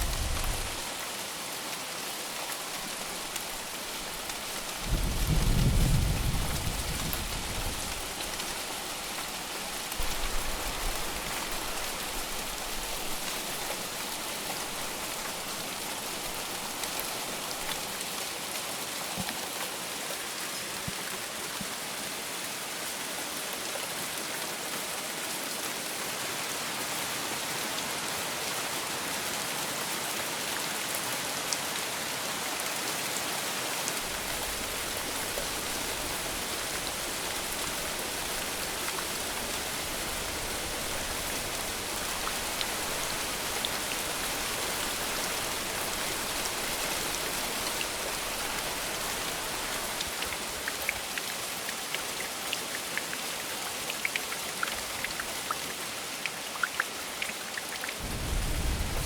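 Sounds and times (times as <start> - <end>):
heavy rain hissing: 0.0 - 18.5, 33.8 - 50.7, 58.0 - 59.0
raindrops ticking: 34.0 - 59.0.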